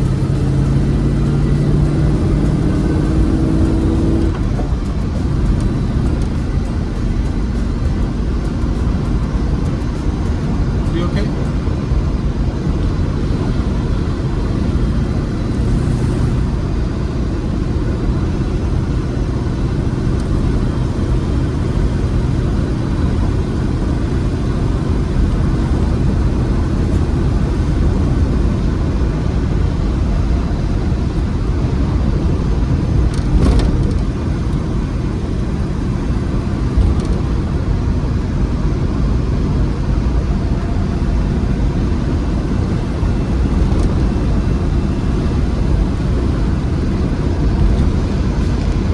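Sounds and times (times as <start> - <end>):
car engine running: 0.0 - 48.9
road and tyre noise: 0.0 - 48.9.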